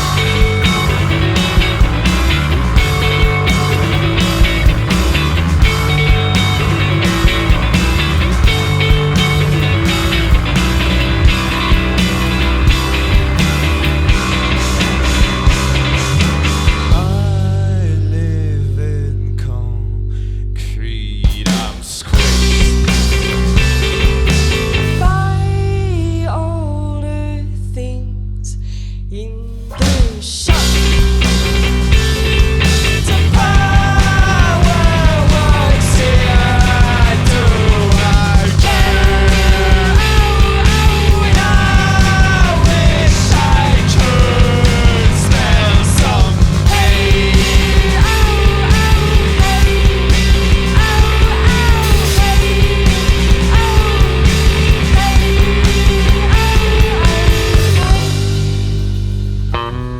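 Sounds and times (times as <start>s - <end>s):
live rock band playing: 0.0s - 17.3s, 21.5s - 25.2s, 29.8s - 59.9s
drums: 0.0s - 18.2s, 21.2s - 26.6s, 29.4s - 59.9s
person singing: 33.1s - 58.5s.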